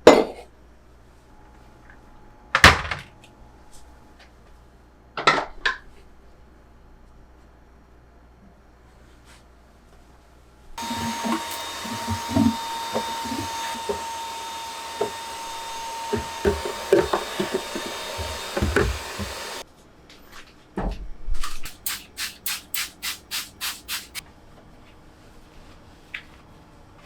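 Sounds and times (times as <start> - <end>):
electric motor whining: 10.8 - 19.6
knocks and rubbing: 10.8 - 19.6.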